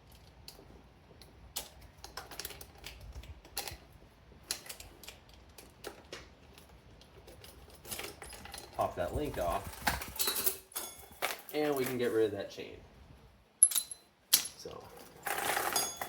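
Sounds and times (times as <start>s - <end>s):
metal chain clicking: 13.6s - 14.6s, 15.2s - 16.0s.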